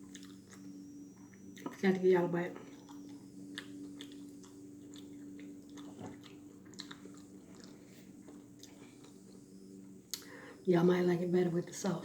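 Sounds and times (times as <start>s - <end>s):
person chewing crunchy food: 0.0s - 1.8s, 2.6s - 9.5s
steady low hum: 0.0s - 12.0s.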